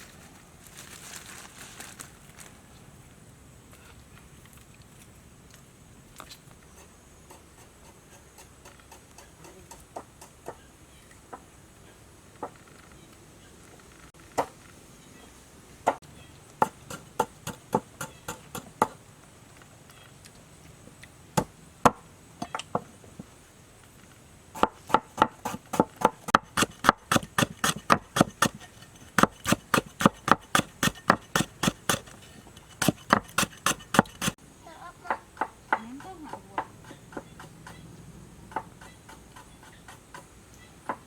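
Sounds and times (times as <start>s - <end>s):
knife chopping on board: 16.6s - 19.0s, 24.6s - 34.4s.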